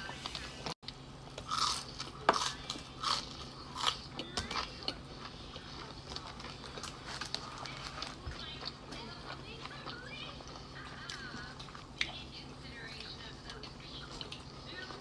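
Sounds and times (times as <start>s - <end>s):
crisp chewing crunches: 1.4s - 12.3s.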